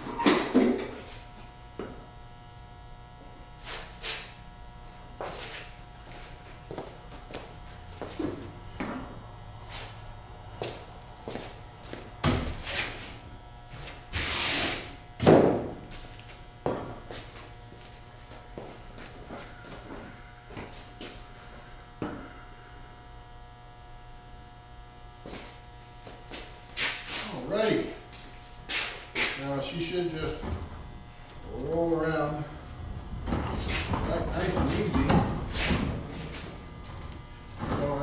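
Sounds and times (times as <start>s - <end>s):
electrical mains hum: 0.0s - 38.0s
scuffing footsteps: 5.2s - 9.1s, 10.6s - 14.0s, 15.8s - 21.2s, 25.2s - 29.4s, 33.5s - 38.0s
low hum: 30.0s - 37.8s.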